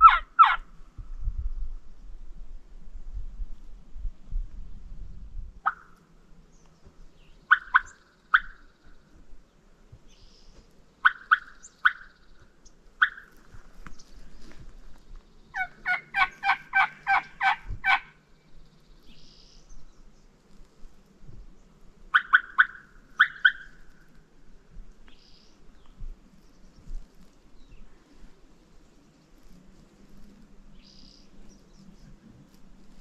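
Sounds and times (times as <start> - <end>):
turkey clucks: 0.0 - 0.6, 7.5 - 8.6, 11.0 - 12.1, 13.0 - 13.3, 15.6 - 18.1, 22.1 - 23.7
turkey yelping: 0.0 - 0.6, 5.6 - 5.9, 7.5 - 8.6, 11.0 - 12.1, 13.0 - 13.3, 15.6 - 18.2, 22.1 - 23.8.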